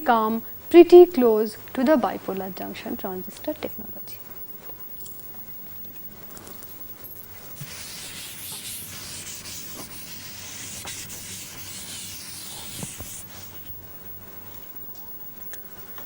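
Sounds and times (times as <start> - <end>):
scratchy writing on a surface: 7.6 - 13.7.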